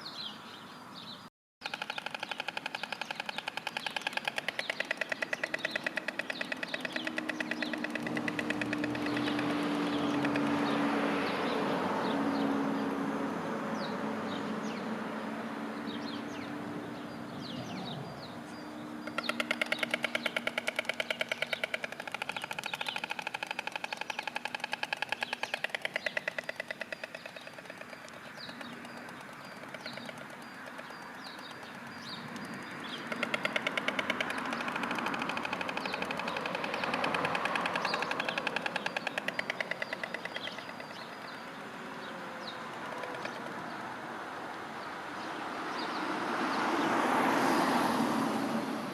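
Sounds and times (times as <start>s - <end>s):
small birds chirping: 0.0s - 12.9s, 15.7s - 44.0s
passing road traffic: 0.0s - 48.9s
storks clattering bills: 1.6s - 10.8s, 19.1s - 41.4s.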